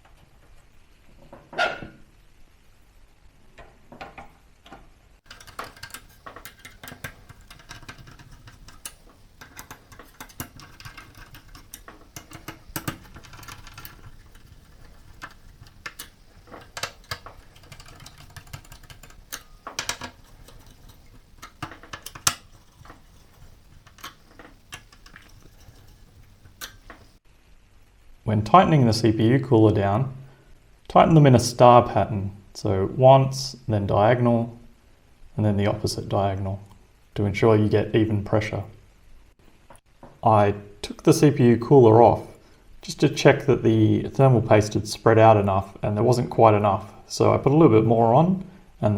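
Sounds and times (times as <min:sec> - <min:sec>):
tools clicking inside computer: 0:05.2 - 0:27.2.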